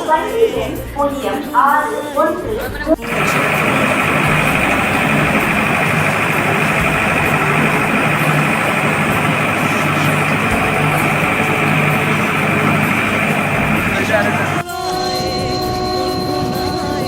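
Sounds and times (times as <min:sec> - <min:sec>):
train locomotive engine running: 0:03.0 - 0:17.0.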